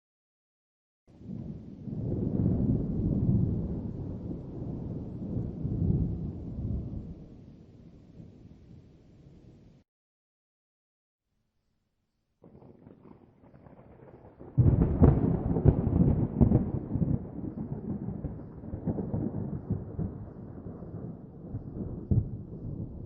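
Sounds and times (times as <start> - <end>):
thunder crack and rumble: 1.2 - 7.4, 12.4 - 23.0.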